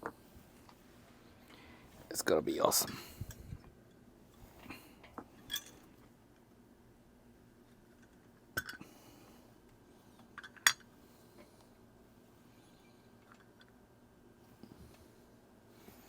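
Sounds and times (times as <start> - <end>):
small tools clicking and clinking: 5.4 - 5.8.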